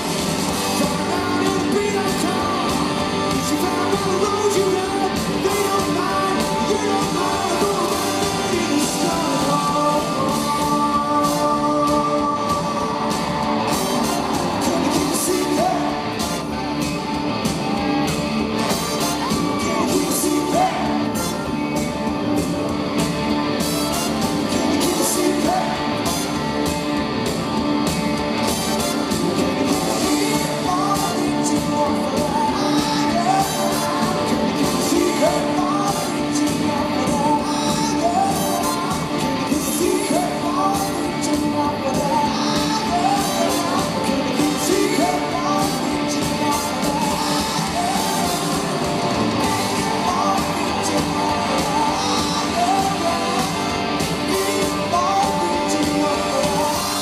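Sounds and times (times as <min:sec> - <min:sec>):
crowd shouting: 0:00.0 - 0:27.3, 0:41.9 - 0:57.0
live rock band with vocals: 0:00.0 - 0:57.0.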